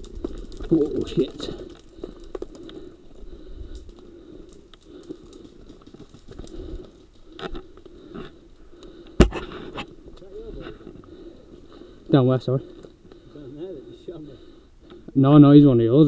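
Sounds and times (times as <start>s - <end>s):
rustling of camera and gear: 9.2s - 9.9s.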